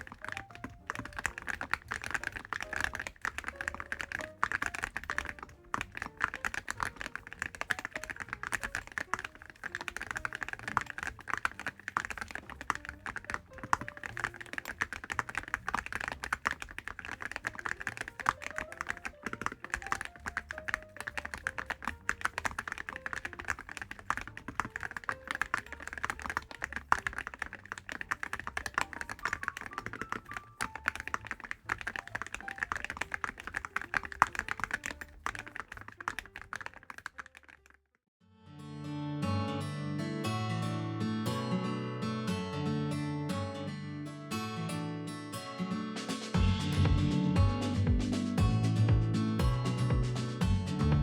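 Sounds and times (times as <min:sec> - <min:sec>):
mechanical keyboard typing: 0:00.0 - 0:37.8.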